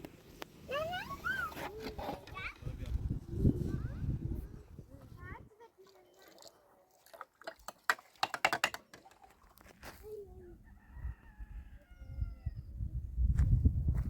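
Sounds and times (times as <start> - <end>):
rooster crowing: 10.6 - 12.7.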